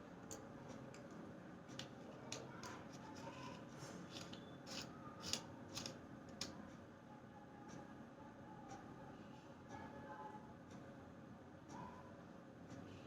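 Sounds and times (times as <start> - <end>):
handling clicks and rubbing: 1.7 - 6.6.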